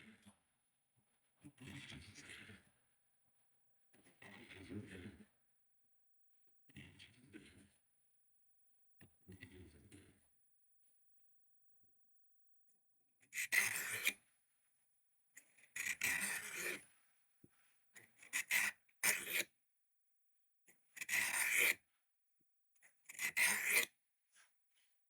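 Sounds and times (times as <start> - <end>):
knife rasping on sharpener: 13.4 - 14.2, 15.8 - 16.8, 18.2 - 19.5, 21.0 - 21.8, 23.1 - 23.9.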